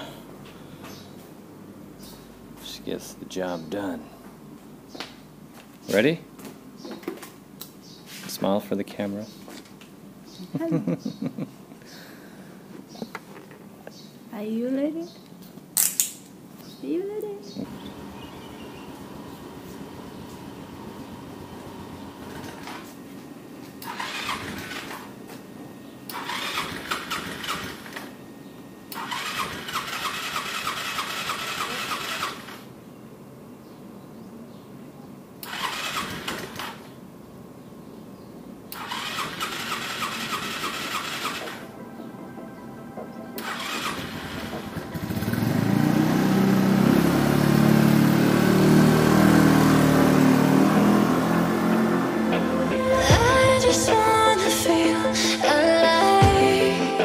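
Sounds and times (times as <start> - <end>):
motorcycle engine accelerating: 17.6 - 22.9, 43.4 - 53.6
motorbike starter cranking: 23.8 - 25.1, 26.1 - 28.2, 28.9 - 32.6, 35.4 - 36.9, 38.7 - 41.6, 43.4 - 45.6.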